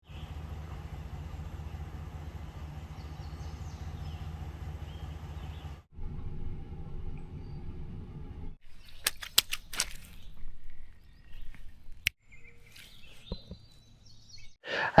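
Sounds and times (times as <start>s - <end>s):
heavy machine engine running: 0.0s - 8.6s
faint bird chirps: 0.1s - 5.8s, 7.2s - 7.8s, 10.1s - 14.6s.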